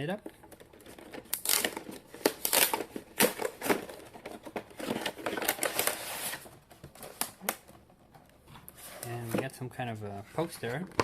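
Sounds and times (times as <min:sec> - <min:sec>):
cardboard and paper rustling: 0:00.4 - 0:07.6.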